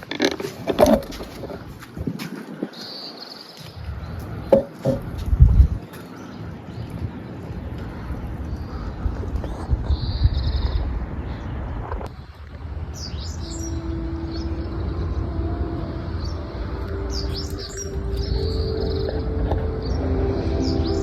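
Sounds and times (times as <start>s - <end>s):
small birds chirping: 2.4s - 15.3s, 16.2s - 21.0s
steady low rumble: 3.8s - 21.0s
distant loudspeaker chime melody: 13.6s - 21.0s.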